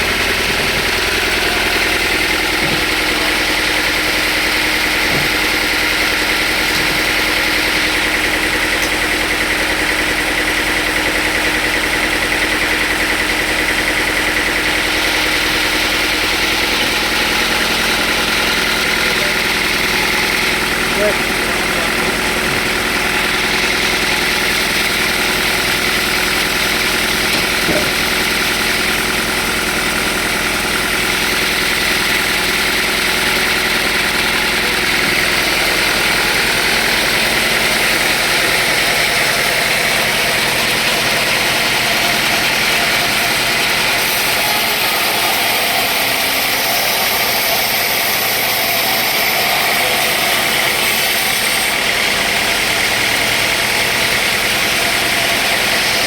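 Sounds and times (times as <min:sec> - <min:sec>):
constant machine hiss: 0:00.0 - 0:56.0
sawmill machinery drone: 0:00.0 - 0:56.0.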